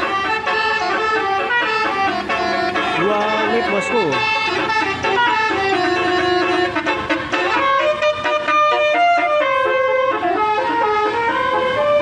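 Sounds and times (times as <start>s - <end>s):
bus horn playing a tune: 0.0s - 12.0s.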